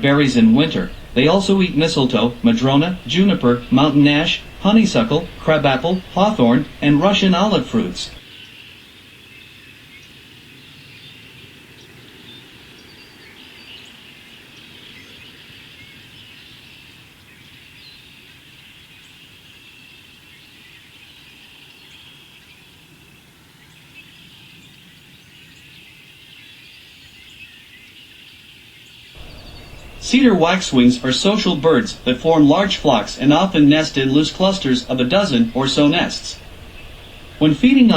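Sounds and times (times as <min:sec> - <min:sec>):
flock of birds calling: 0:00.0 - 0:08.2, 0:29.2 - 0:37.9.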